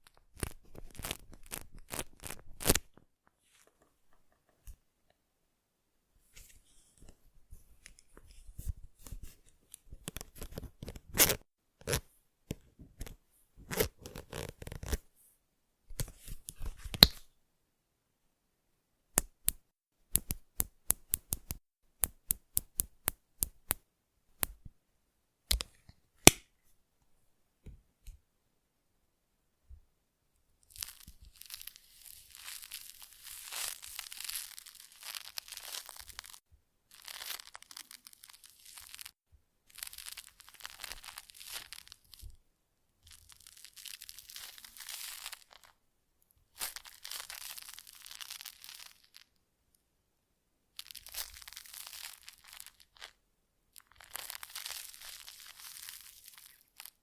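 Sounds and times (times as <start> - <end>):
crackling and crinkling: 0.0 - 4.8, 6.3 - 15.1, 30.6 - 42.4, 43.0 - 49.4, 50.8 - 57.0
crinkly rustle: 30.8 - 42.2, 43.1 - 45.7, 46.6 - 49.3, 50.8 - 53.2, 53.8 - 57.0.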